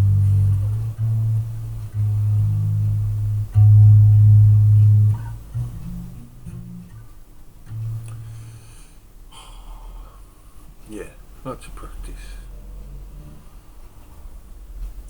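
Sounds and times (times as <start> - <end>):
electric bass guitar notes: 0.0 - 8.7.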